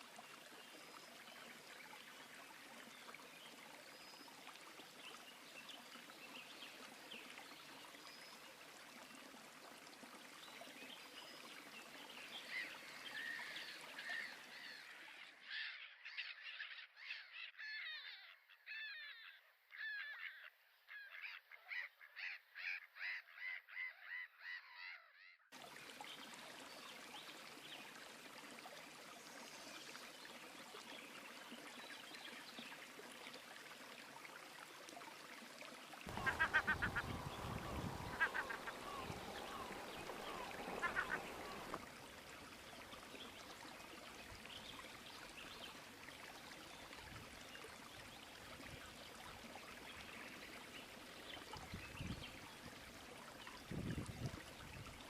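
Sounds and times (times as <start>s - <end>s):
rapid repeated bird calls: 36.1s - 41.8s
river water rushing: 36.1s - 41.8s
wild birds calling: 36.1s - 41.8s.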